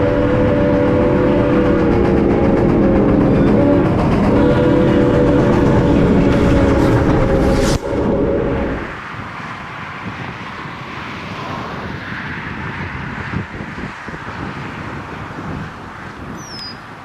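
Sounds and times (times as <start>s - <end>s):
locomotive air horn chord: 0.0s - 9.0s
locomotive engine: 0.0s - 12.0s
rail noise: 0.0s - 17.0s.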